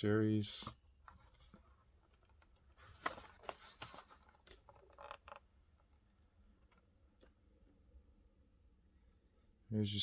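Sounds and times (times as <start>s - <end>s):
plastic and card handling noise: 0.8s - 7.8s.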